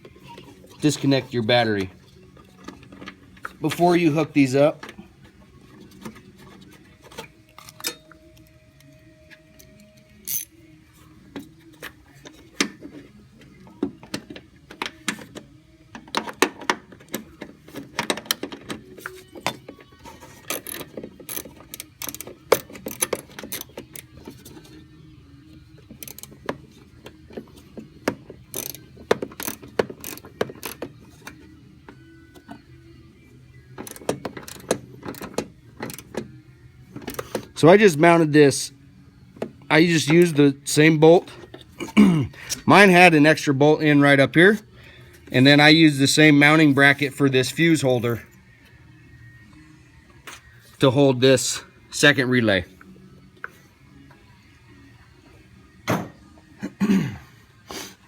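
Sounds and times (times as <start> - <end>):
wrench clicking on bolt: 20.5 - 24.1, 26.0 - 26.4, 28.5 - 31.4, 33.8 - 36.1.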